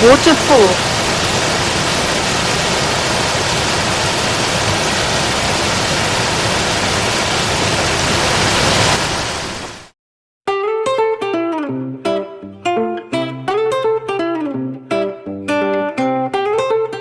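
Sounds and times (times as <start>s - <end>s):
waterfall rushing: 0.0s - 9.9s.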